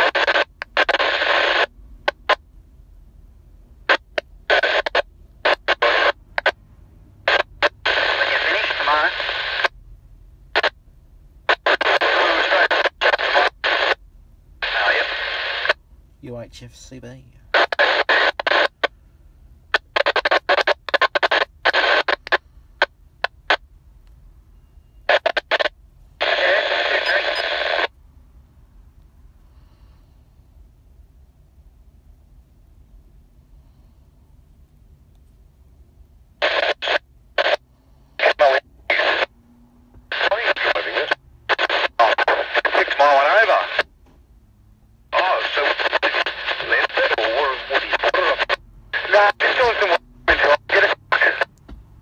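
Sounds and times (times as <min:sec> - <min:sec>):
radio static bursts: 0:00.0 - 0:02.4, 0:03.9 - 0:06.6, 0:07.3 - 0:09.7, 0:11.5 - 0:14.0, 0:14.6 - 0:15.8, 0:17.6 - 0:18.9, 0:19.8 - 0:23.6, 0:25.0 - 0:27.9, 0:36.4 - 0:39.3, 0:40.1 - 0:43.9, 0:45.2 - 0:51.5.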